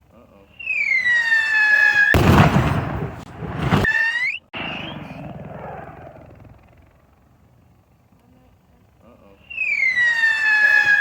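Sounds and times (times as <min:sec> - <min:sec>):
short rising whistle: 0:00.6 - 0:02.2, 0:03.5 - 0:05.2, 0:09.5 - 0:11.0
firework rushing hiss: 0:02.1 - 0:04.0.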